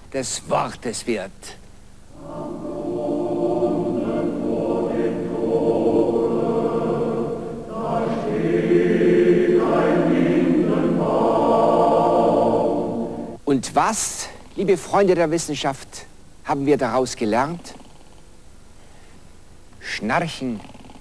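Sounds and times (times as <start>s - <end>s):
choir singing held chords: 2.1s - 13.4s.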